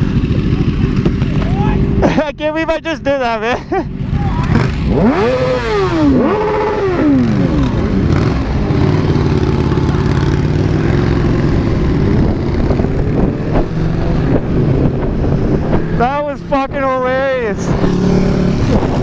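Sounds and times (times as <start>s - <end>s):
motorcycle engine running: 0.0s - 19.0s
wind noise on microphone: 10.3s - 19.0s.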